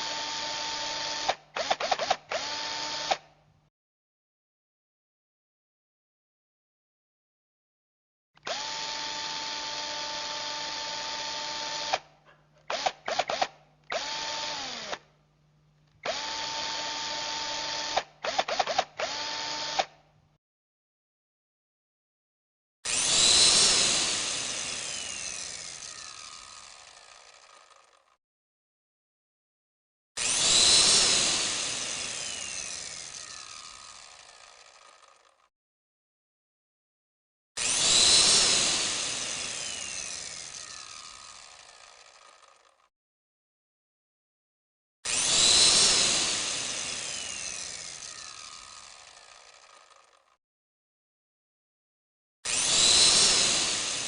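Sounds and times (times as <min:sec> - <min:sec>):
power tool motor spinning down: 0:00.0 - 0:03.3, 0:08.4 - 0:15.1, 0:16.0 - 0:20.0, 0:22.8 - 0:28.2, 0:30.2 - 0:35.5, 0:37.6 - 0:42.9, 0:45.0 - 0:50.4, 0:52.4 - 0:54.0.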